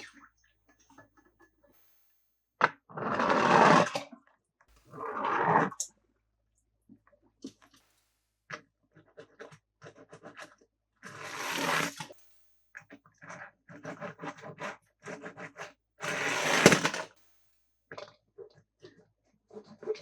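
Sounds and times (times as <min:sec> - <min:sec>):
plastic scraping: 0:16.0 - 0:17.2.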